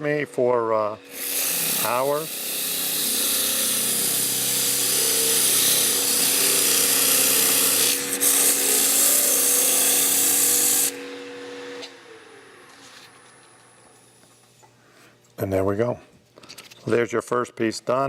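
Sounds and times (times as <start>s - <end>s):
lathe motor hum: 1.0s - 14.1s.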